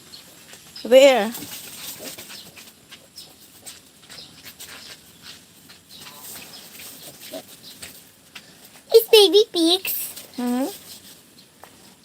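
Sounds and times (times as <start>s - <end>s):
piglets rustling: 0.1s - 12.0s
piglets squeaking: 8.9s - 10.8s.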